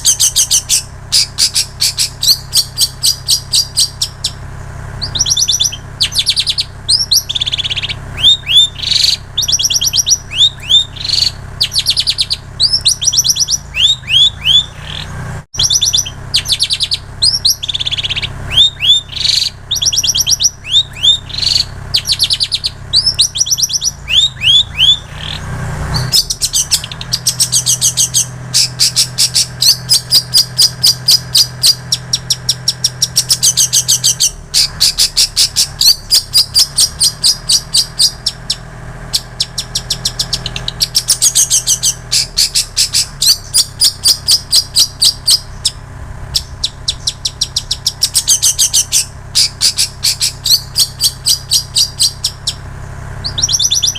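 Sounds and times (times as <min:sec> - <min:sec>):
bird whistling falling notes: 0:00.0 - 0:04.4, 0:05.0 - 0:45.8, 0:53.2 - 0:53.9
bird repeating sharp high notes: 0:05.0 - 0:25.4.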